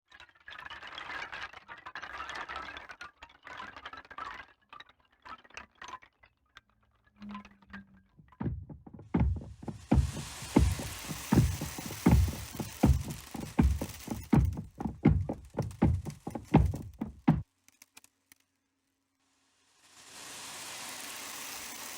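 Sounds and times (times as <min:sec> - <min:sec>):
electronic crackle of clicks: 0:07.2 - 0:18.4
deep thumps: 0:08.2 - 0:17.4
hiss: 0:09.7 - 0:16.7, 0:19.2 - 0:21.9.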